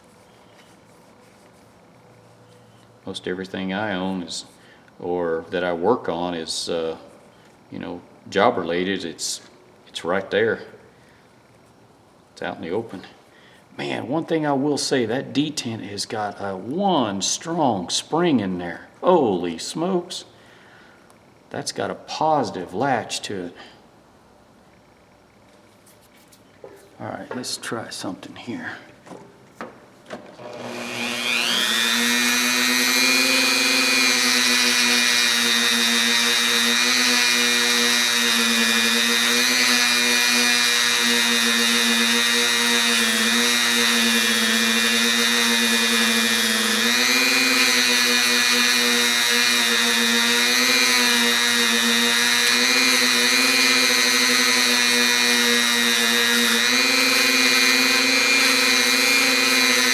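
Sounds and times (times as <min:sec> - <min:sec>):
electric power tool whining: 0:30.4 - 0:59.9.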